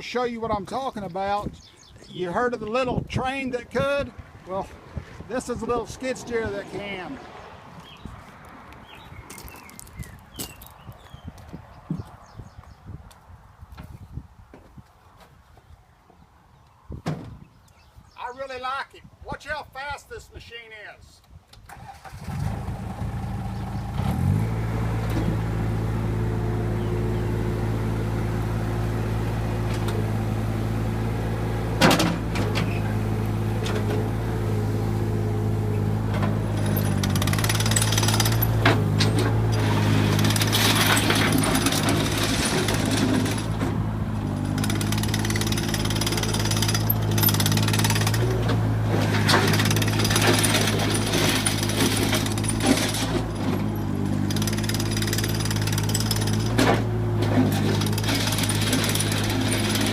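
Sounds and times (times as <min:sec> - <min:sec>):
diesel engine revving: 0:21.7 - 0:59.9
track and undercarriage rattle: 0:31.8 - 0:34.2, 0:35.7 - 0:59.9.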